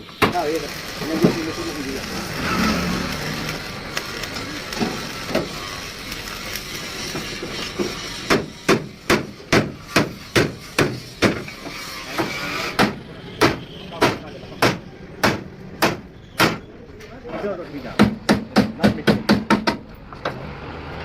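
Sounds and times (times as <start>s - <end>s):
workshop noise: 0.0s - 21.0s
hammer blows: 7.2s - 16.7s.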